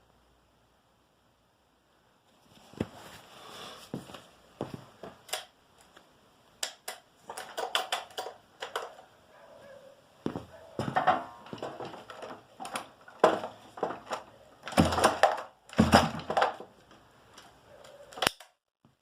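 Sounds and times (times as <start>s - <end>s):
knocks and clicks of handling: 6.6s - 9.0s.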